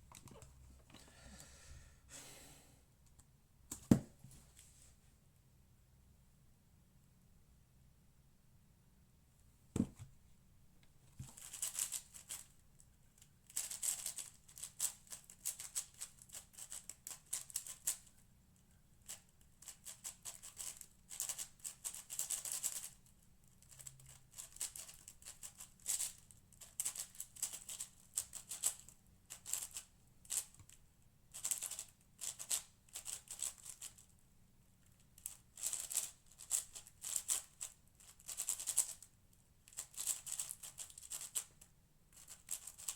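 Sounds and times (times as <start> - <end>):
single thump: 9.8 - 10.1.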